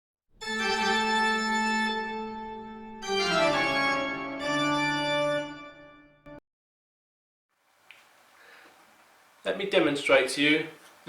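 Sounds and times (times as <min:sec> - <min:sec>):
long held music chords: 0:00.4 - 0:05.9.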